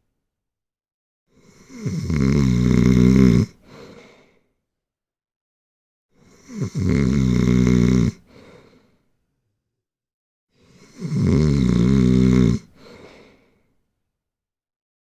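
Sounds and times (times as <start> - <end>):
loud snoring: 1.4 - 3.6, 6.2 - 8.3, 10.7 - 12.8.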